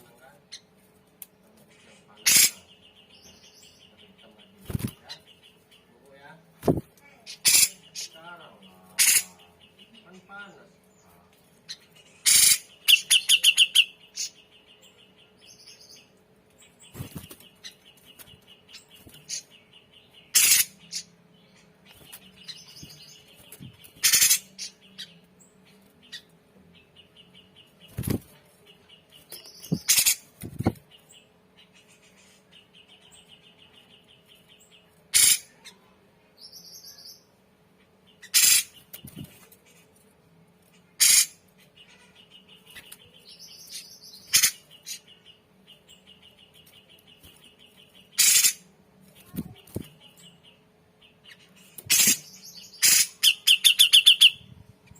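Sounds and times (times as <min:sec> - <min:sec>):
bulbul calling: 0:06.7 - 0:08.2, 0:12.2 - 0:14.4, 0:48.0 - 0:48.7, 0:51.8 - 0:54.5.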